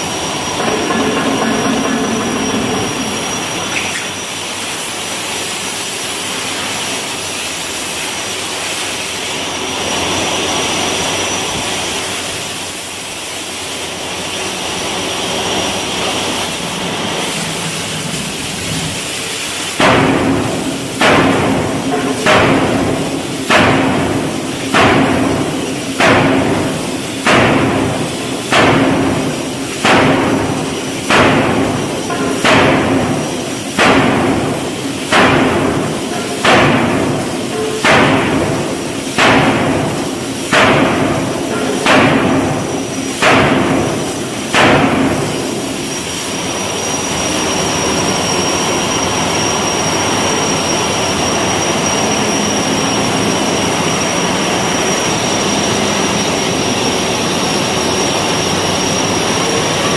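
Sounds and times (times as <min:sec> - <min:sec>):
high whine: 0:00.0 - 0:04.8
steam hammer striking steel: 0:00.0 - 0:07.4, 0:15.8 - 0:59.9.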